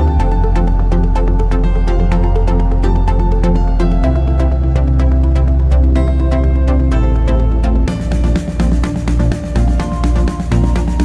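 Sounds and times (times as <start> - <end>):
electronic music with beat: 0.0 - 11.0.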